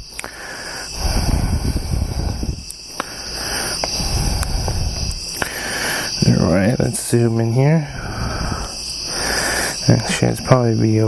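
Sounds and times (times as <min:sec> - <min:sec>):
crickets chirping: 0:00.0 - 0:11.0
low rumbling: 0:01.0 - 0:02.7, 0:03.9 - 0:05.3, 0:06.2 - 0:08.8.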